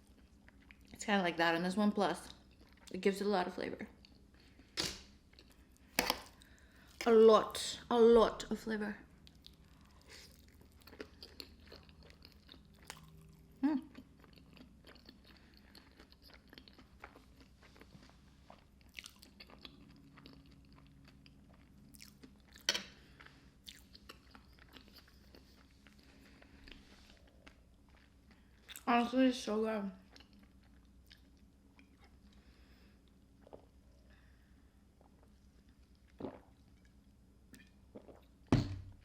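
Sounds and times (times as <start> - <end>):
wet crunchy chewing: 9.2 - 28.8.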